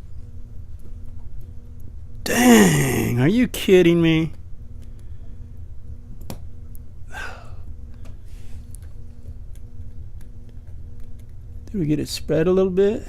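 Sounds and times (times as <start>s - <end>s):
faint hum: 0.0s - 13.0s.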